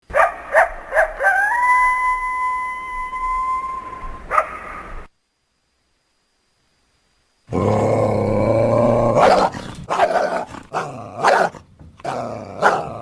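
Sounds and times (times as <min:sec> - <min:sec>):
animal calls: 0:07.5 - 0:13.0.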